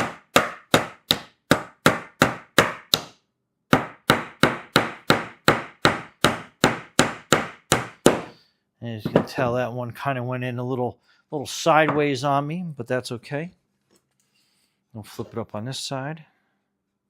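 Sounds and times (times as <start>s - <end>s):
hammer driving nails into wood: 0.0s - 8.4s.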